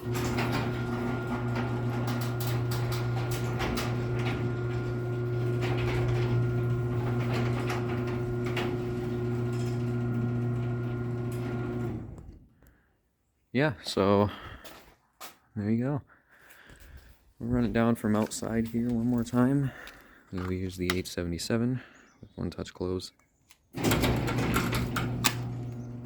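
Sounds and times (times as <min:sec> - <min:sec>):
garage door rattling: 0:00.0 - 0:12.2, 0:23.7 - 0:26.0
garage door opener motor hum: 0:00.0 - 0:12.4, 0:23.7 - 0:26.0.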